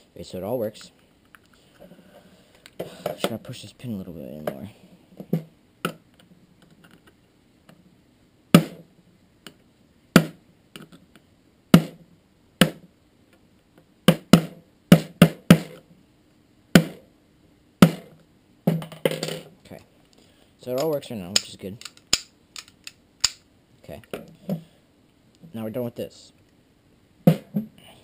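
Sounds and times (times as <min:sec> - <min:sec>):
pistol hammer clicking and snapping: 0:20.8 - 0:23.4.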